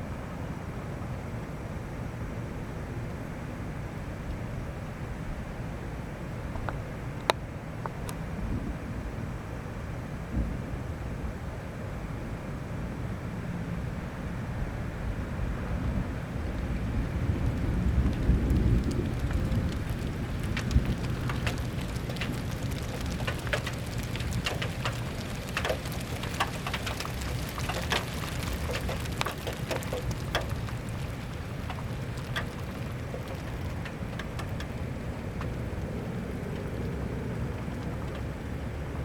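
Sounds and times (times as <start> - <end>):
thunder rumble: 14.9 - 39.0
raindrops tapping on a surface: 16.4 - 39.0.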